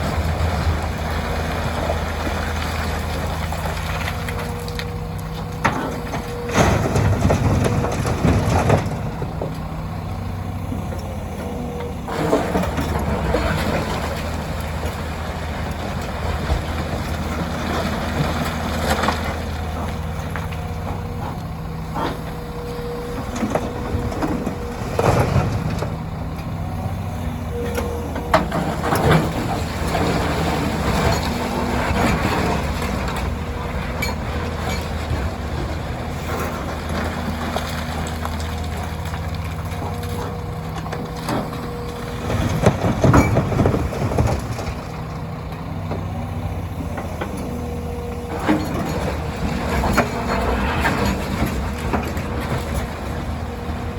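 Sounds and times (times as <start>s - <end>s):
diesel engines running: 0.0s - 53.9s
rocks clattering into truck bed: 5.5s - 9.6s.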